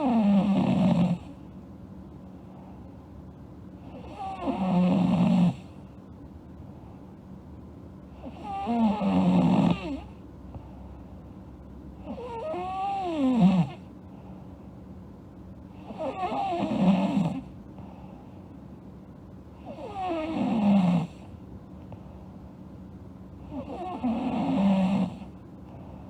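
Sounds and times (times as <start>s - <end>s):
girl snoring: 0.0s - 1.3s, 3.9s - 5.7s, 8.2s - 10.1s, 12.0s - 13.8s, 15.8s - 17.5s, 19.6s - 21.2s, 23.5s - 25.3s.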